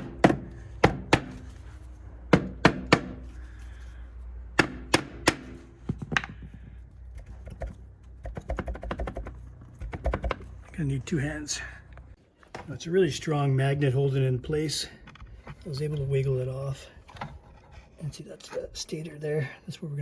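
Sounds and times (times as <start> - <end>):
sharp knocks on metal cover: 0.0 - 1.4, 4.6 - 6.5.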